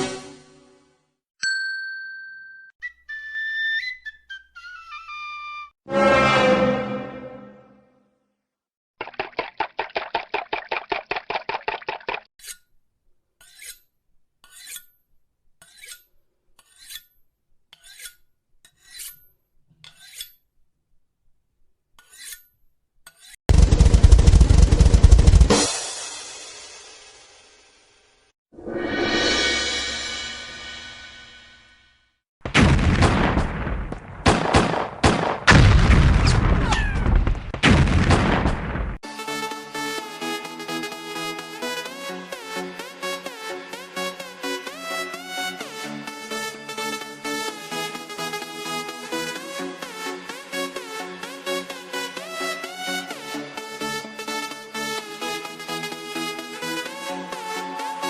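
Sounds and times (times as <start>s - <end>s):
short falling whistles: 2.8s - 5.7s
knife on sharpening steel: 12.4s - 12.7s, 13.4s - 20.5s, 22.0s - 23.4s
gunfire: 23.5s - 25.6s, 32.4s - 39.0s
cannon blasts: 32.4s - 39.0s.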